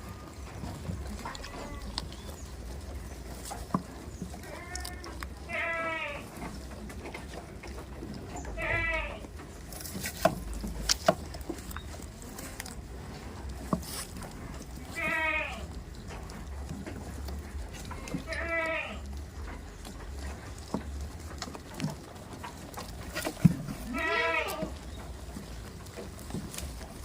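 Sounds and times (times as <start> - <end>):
goats bleating: 1.1 - 2.1, 4.4 - 6.5, 8.4 - 9.4, 14.8 - 15.8, 17.8 - 19.2, 23.4 - 24.9.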